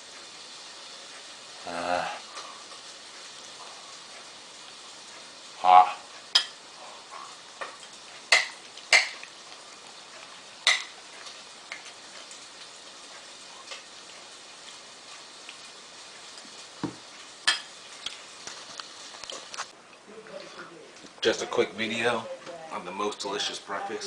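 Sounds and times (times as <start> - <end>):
faint steady hiss: 0.0 - 24.0
cutlery clinking on a plate: 6.3 - 6.6, 7.6 - 9.3, 10.7 - 11.0.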